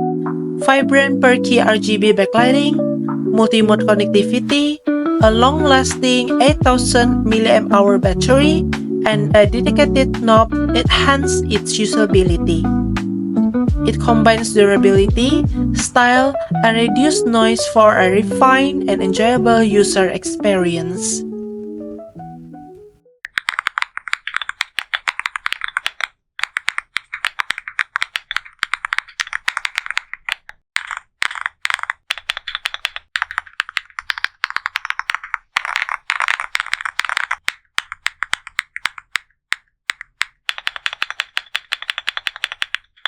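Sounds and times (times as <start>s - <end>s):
mechanical keyboard typing: 23.3s - 43.0s.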